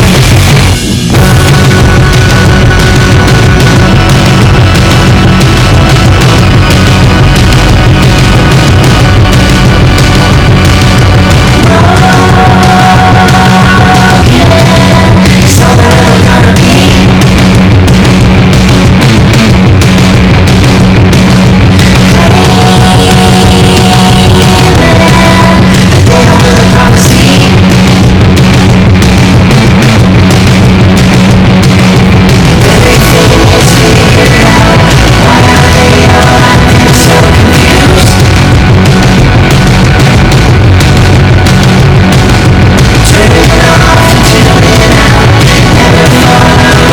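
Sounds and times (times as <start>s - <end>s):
distorted guitars: 0.0s - 46.9s
drums: 0.0s - 46.9s
held vocal or lead line: 0.0s - 46.9s
loud rock music: 0.0s - 46.9s
person singing: 1.1s - 18.2s, 21.8s - 28.1s, 32.3s - 39.4s, 42.4s - 46.9s.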